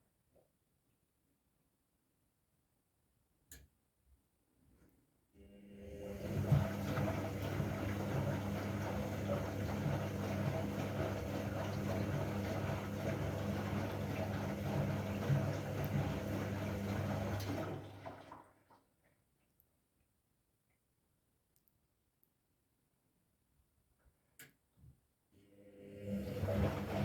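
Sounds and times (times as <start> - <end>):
water rushing through machine: 5.9 - 18.5, 26.0 - 27.0.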